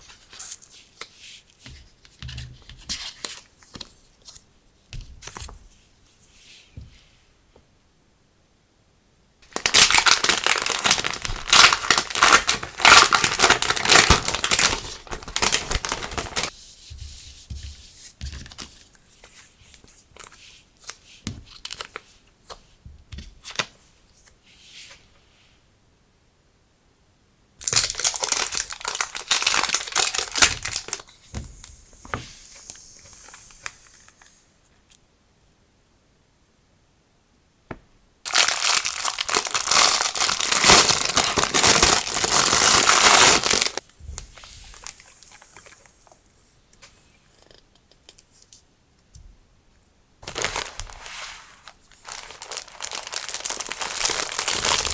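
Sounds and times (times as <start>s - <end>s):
packaging torn and crinkled: 9.5s - 16.5s, 27.6s - 31.1s, 38.3s - 43.8s, 50.2s - 54.9s.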